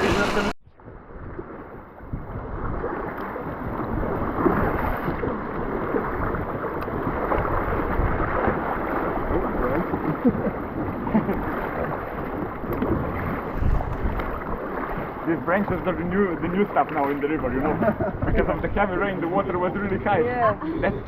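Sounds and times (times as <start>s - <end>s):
river water rushing and splashing: 0.0s - 0.6s, 2.4s - 17.6s
wind buffeting microphone: 0.0s - 21.0s.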